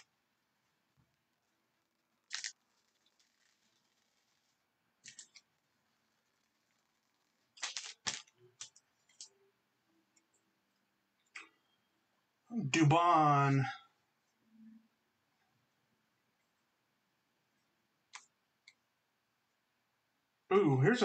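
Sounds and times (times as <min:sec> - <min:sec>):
cards snapping and sliding: 0:07.6 - 0:09.3.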